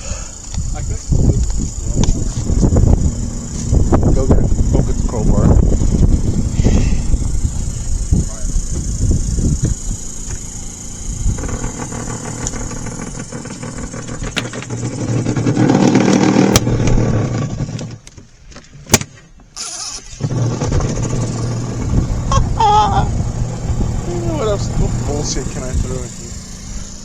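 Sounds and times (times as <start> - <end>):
washing machine motor hum: 0.0 - 17.1, 19.6 - 27.0
rattling and grinding junk: 0.0 - 27.0
sharp click: 18.0 - 20.2.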